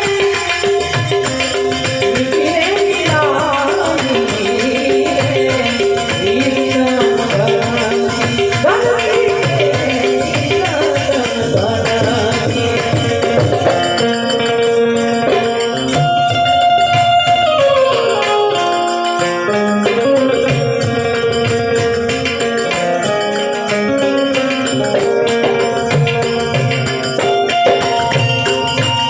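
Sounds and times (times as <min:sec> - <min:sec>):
harmonium melody: 0:00.0 - 0:29.0
jingling hand percussion: 0:00.0 - 0:29.0
tabla: 0:00.0 - 0:29.0.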